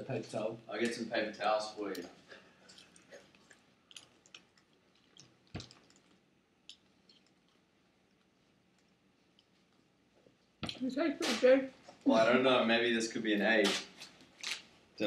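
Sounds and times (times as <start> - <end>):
mouth clicks from chewing: 2.6 - 7.6.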